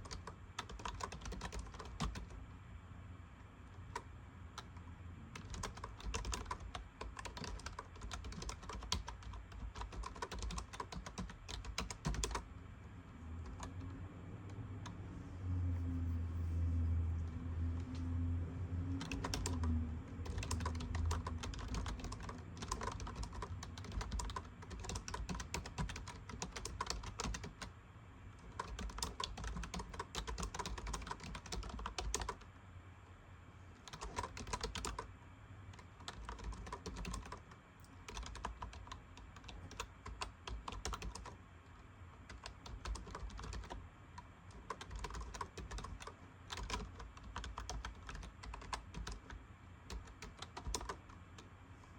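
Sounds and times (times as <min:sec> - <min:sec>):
typing on computer keyboard: 0:00.0 - 0:02.4, 0:05.4 - 0:12.4, 0:13.4 - 0:14.6, 0:19.0 - 0:27.7, 0:28.4 - 0:32.5, 0:33.8 - 0:35.1, 0:35.8 - 0:41.4, 0:42.3 - 0:51.5.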